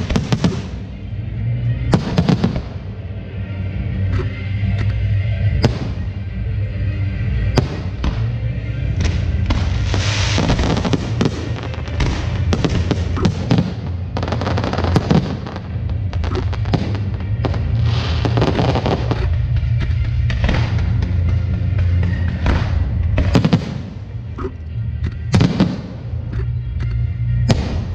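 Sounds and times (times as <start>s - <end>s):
fireworks banging and crackling: 0.0s - 1.0s, 1.8s - 2.8s, 7.6s - 8.4s, 9.0s - 24.2s, 25.3s - 26.1s, 27.4s - 27.9s
music playing: 0.0s - 27.9s.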